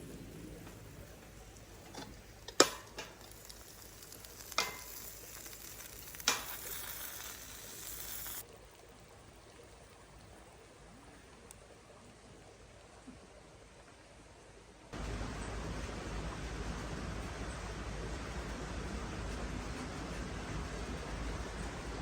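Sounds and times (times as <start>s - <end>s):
utensil clacking against pan: 1.8s - 3.2s, 4.4s - 5.0s
food sizzling in a frying pan: 1.8s - 8.4s.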